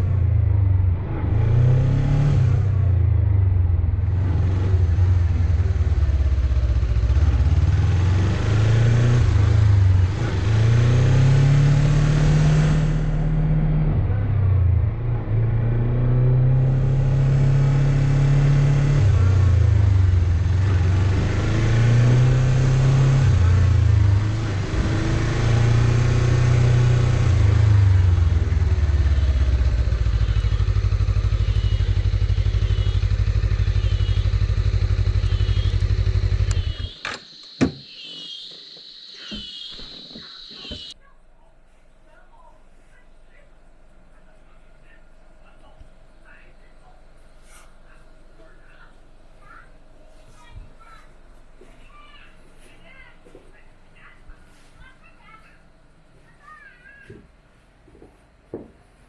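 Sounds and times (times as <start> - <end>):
motorcycle engine accelerating: 0.0 - 41.0.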